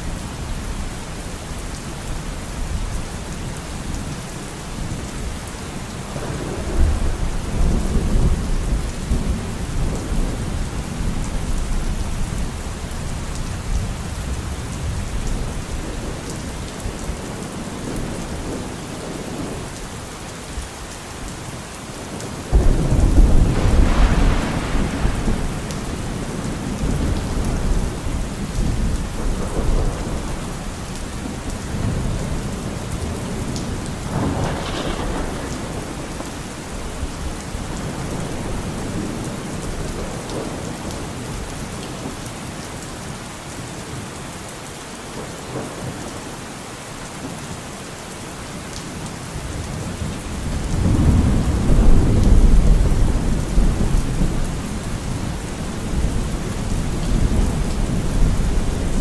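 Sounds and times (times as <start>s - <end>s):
steady rain: 0.0s - 59.0s
thunder rumbling: 6.1s - 19.6s, 22.5s - 41.5s, 49.5s - 59.0s.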